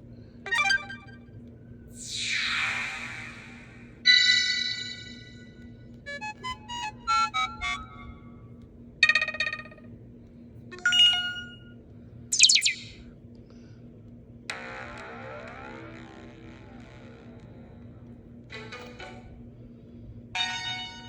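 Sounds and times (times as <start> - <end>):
electronic chime notes: 10.8 - 11.6, 12.4 - 13.0
rising swept tone: 12.4 - 13.0
sustained electronic tone: 12.4 - 13.0.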